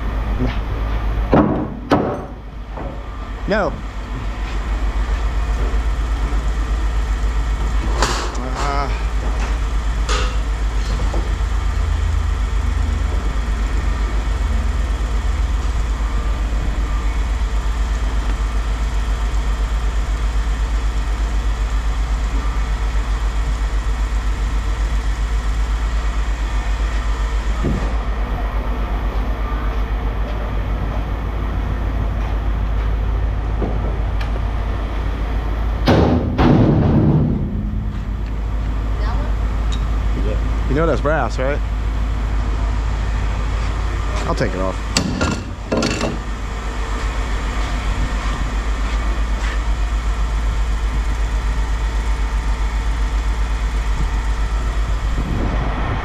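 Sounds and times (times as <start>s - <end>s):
engine rumbling: 0.0s - 56.0s.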